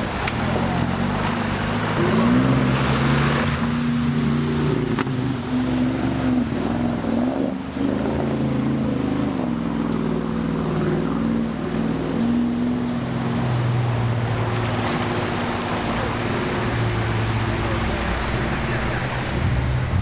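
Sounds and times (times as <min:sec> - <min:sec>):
off-road vehicle engine revving: 0:00.0 - 0:20.0
wind noise on microphone: 0:14.3 - 0:20.0.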